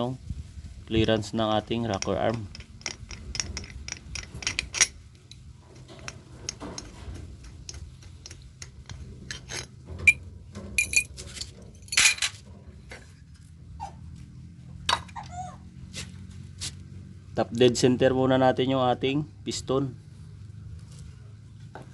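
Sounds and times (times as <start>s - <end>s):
small metallic clicks and ticks: 1.7s - 10.2s
louder metal clinks: 10.8s - 12.4s.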